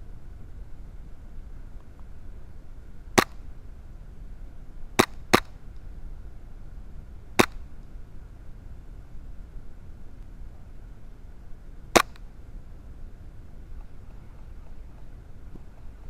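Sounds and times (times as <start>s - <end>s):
airsoft gun shots: 3.2s - 3.4s, 5.0s - 5.6s, 7.4s - 7.6s, 11.9s - 12.2s.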